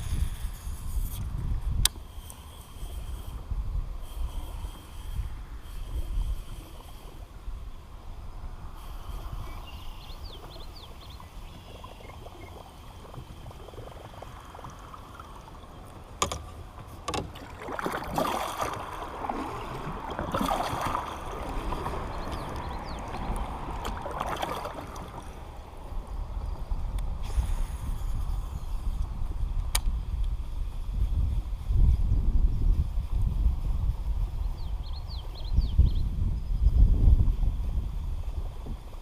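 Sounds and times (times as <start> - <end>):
wind rumbling on microphone: 0.0 - 39.0
water splashing: 10.4 - 25.9.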